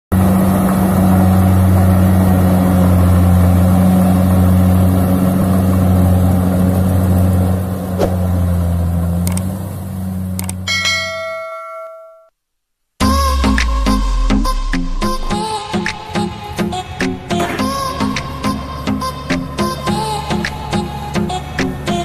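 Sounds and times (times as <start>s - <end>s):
combine harvester engine humming: 0.1s - 11.5s, 14.7s - 22.0s
sharp clicks: 9.2s - 9.5s, 10.4s - 10.6s
bright chime ringing: 10.7s - 12.3s.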